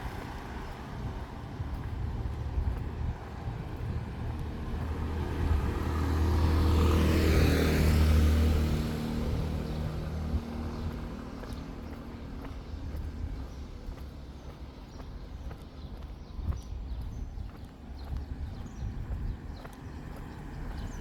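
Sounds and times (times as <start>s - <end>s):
vehicle passing by: 0.0s - 13.6s.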